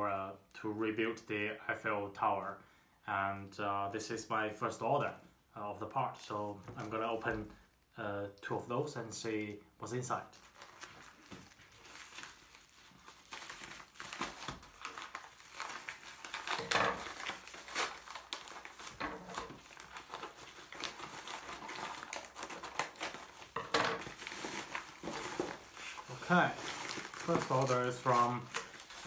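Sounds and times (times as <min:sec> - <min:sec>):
packaging crinkling and rustling: 0:10.1 - 0:29.0.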